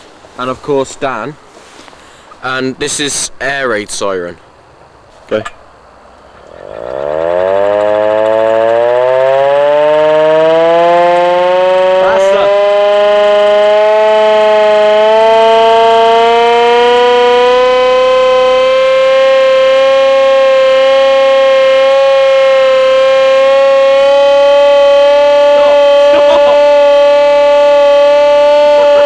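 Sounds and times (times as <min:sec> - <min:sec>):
hand-cranked air raid siren wailing: 0:06.5 - 0:29.0.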